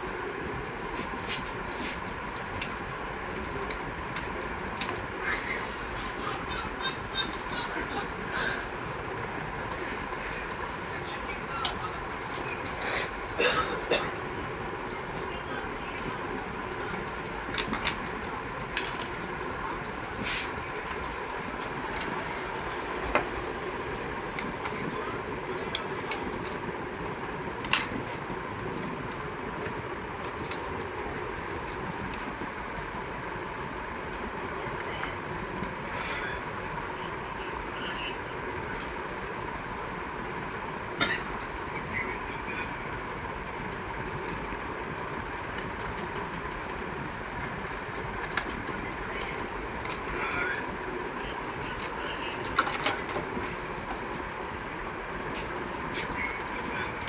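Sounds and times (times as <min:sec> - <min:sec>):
steady background rumble: 0:00.0 - 0:57.0.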